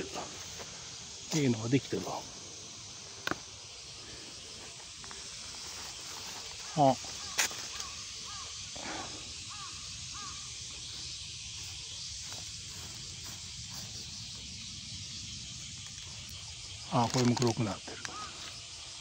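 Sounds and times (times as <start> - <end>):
insects droning: 0.0 - 19.0
bird cawing: 6.2 - 10.9, 17.9 - 18.7.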